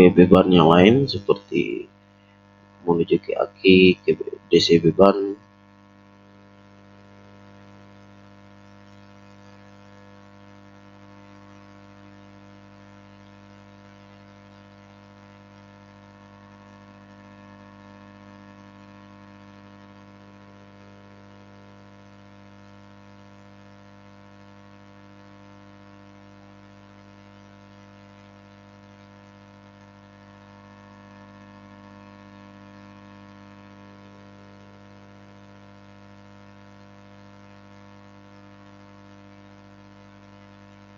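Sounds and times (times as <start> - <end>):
electrical mains hum: 0.0 - 1.9, 2.8 - 5.4.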